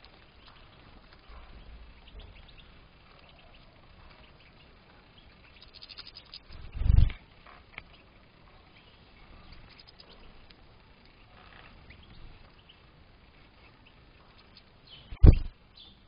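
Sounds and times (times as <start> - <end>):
low steady hiss: 0.0 - 16.0
goldfinches chirping: 0.2 - 10.5.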